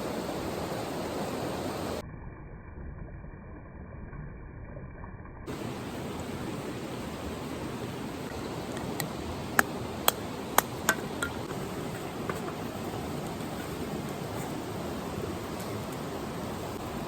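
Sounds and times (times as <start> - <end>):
river water rushing: 5.5 - 17.0.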